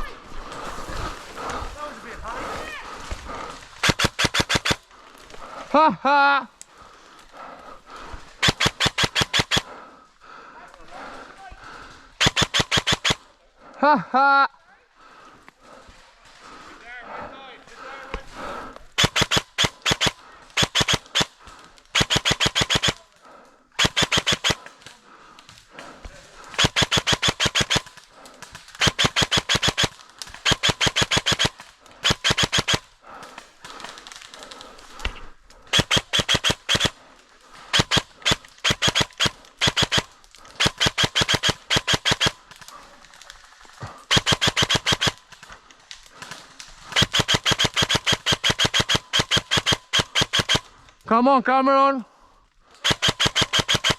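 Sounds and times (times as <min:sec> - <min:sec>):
airsoft gun firing bursts: 0:01.4 - 0:04.9, 0:07.4 - 0:09.8, 0:12.2 - 0:13.2, 0:18.1 - 0:25.0, 0:25.7 - 0:43.0, 0:43.6 - 0:50.9, 0:52.7 - 0:53.9.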